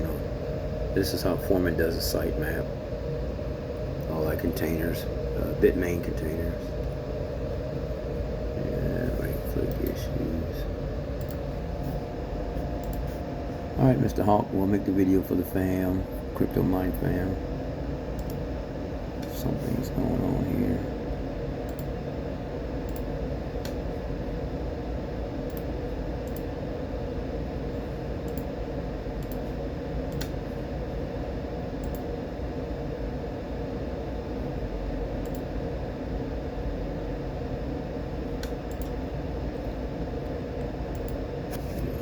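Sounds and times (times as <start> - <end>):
mechanical fan-like hum: 0.0 - 42.0.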